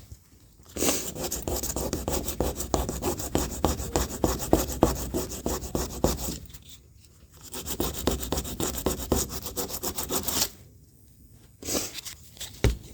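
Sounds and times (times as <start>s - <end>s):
hand sanding strokes: 0.9s - 6.4s, 7.4s - 10.5s.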